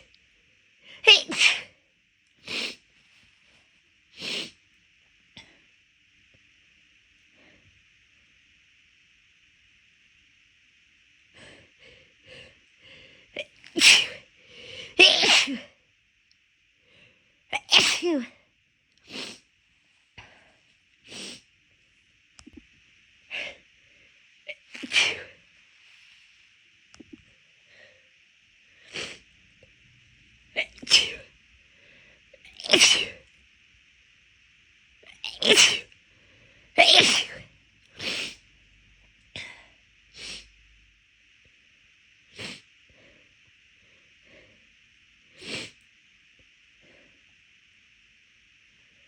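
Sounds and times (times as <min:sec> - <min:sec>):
person sneezing: 0:01.0 - 0:01.8, 0:13.4 - 0:14.3, 0:14.9 - 0:15.8, 0:17.6 - 0:18.4, 0:24.5 - 0:25.4, 0:30.6 - 0:31.3, 0:32.6 - 0:33.2, 0:35.2 - 0:35.9, 0:36.8 - 0:38.4.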